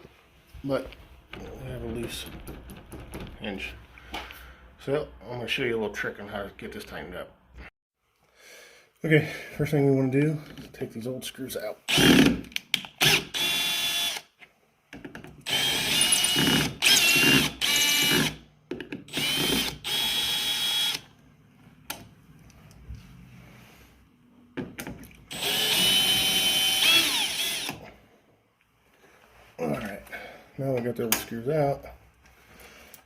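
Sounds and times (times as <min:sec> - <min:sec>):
power drill motor whine: 0:13.0 - 0:14.2, 0:15.5 - 0:18.3, 0:19.1 - 0:21.1, 0:25.3 - 0:27.8.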